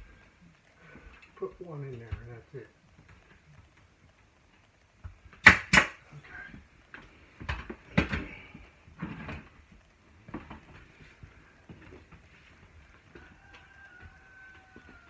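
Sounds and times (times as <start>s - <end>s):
handling knocks: 5.4s - 6.0s
nail gun shots: 5.4s - 6.0s.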